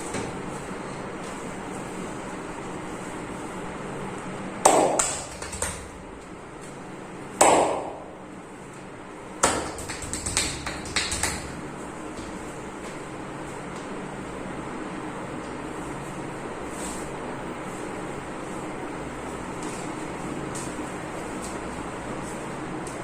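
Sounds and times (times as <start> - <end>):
steady background hum: 0.0 - 23.0
sharp slaps: 4.6 - 6.0, 7.4 - 8.1, 9.4 - 11.6.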